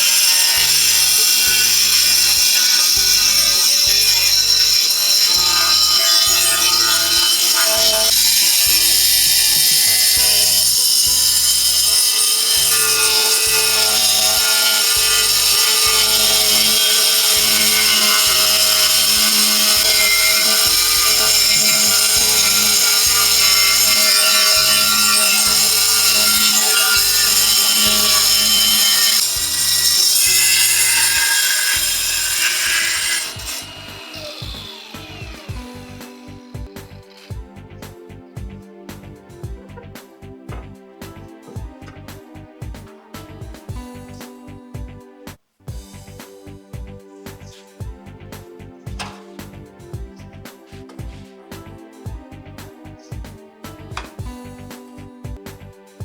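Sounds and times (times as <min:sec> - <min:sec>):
power tool running: 0:00.0 - 0:37.3
background music with steady beat: 0:00.0 - 0:56.0.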